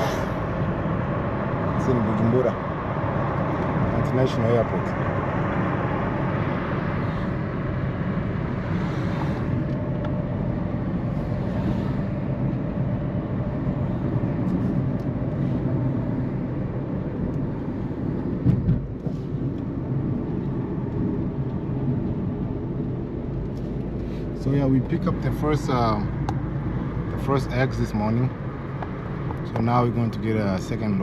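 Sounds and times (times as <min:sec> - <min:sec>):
car engine and tyre noise: 0:00.0 - 0:31.0
brief thump: 0:18.4 - 0:19.2.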